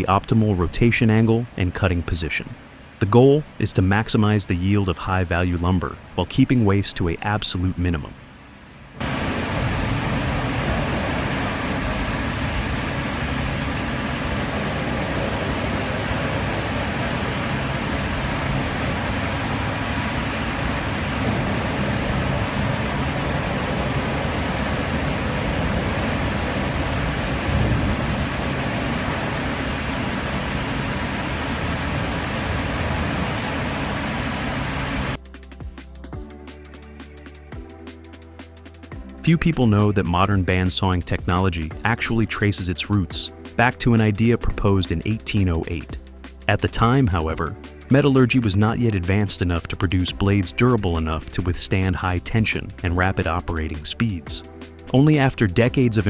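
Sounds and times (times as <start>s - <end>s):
sawmill machinery rumble and hiss: 9.0s - 35.2s.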